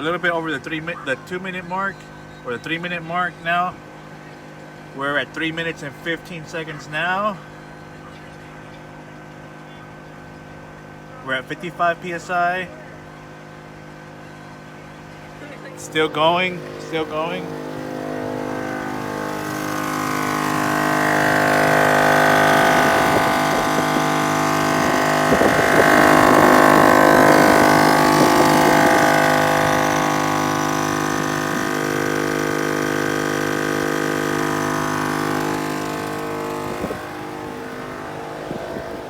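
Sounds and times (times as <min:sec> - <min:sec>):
air compressor running: 0:10.2 - 0:39.0.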